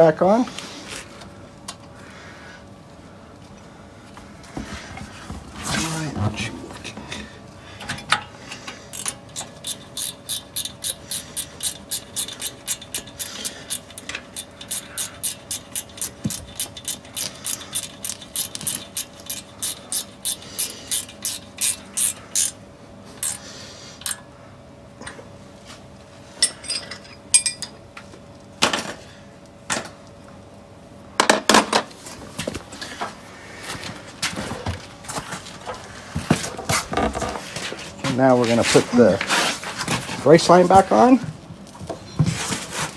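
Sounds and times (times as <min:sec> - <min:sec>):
ratchet wrench clicking: 0:08.9 - 0:22.6, 0:23.2 - 0:23.4, 0:24.0 - 0:24.2.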